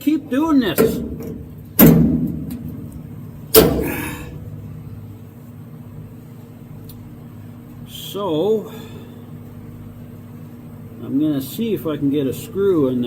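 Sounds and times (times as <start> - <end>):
heavy metal bangs ringing: 0.0 - 5.2.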